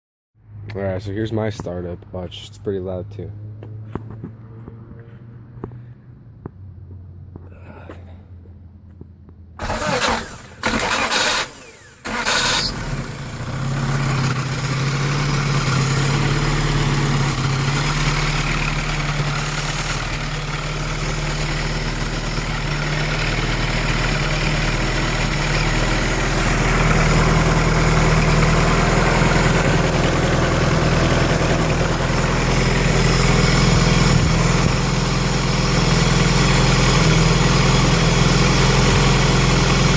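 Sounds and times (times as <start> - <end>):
car engine idling: 7.3 - 39.9
engine cranking: 9.6 - 13.2.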